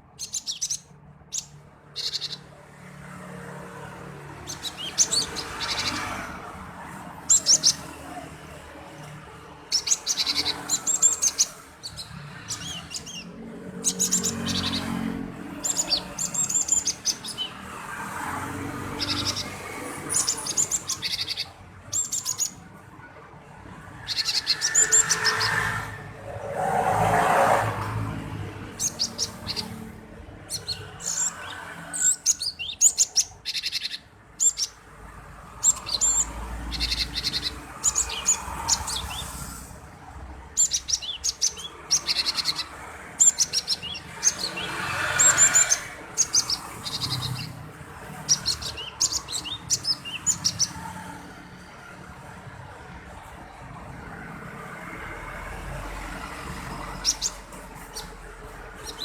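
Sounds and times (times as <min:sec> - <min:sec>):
bird singing sharp chirps: 0:00.2 - 0:02.5, 0:04.2 - 0:06.5, 0:07.2 - 0:07.9, 0:09.6 - 0:22.6, 0:24.0 - 0:28.0, 0:28.7 - 0:34.8, 0:35.5 - 0:39.6, 0:40.5 - 0:50.8, 0:56.9 - 0:58.2, 0:58.8 - 0:59.0.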